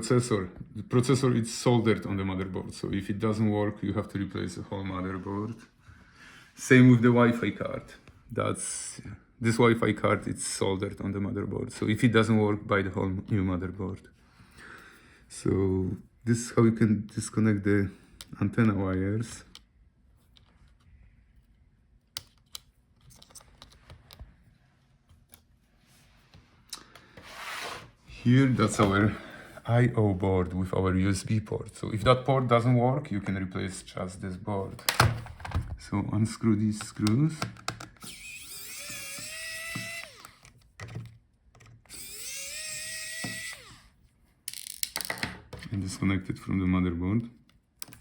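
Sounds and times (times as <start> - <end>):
small laptop parts clicking: 22.1 - 24.3
electric screwdriver motor whine: 38.0 - 40.4, 41.9 - 43.9.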